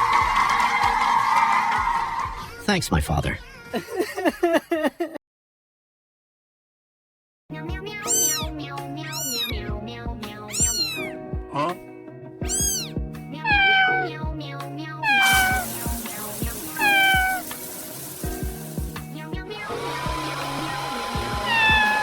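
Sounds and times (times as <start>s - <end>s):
background music with a beat: 0.0s - 2.4s, 7.6s - 14.8s, 15.4s - 22.0s
cat meowing: 7.9s - 9.6s, 10.4s - 11.7s, 12.4s - 14.2s, 15.0s - 15.8s, 16.6s - 17.6s, 21.5s - 22.0s
steady hiss: 15.2s - 19.2s.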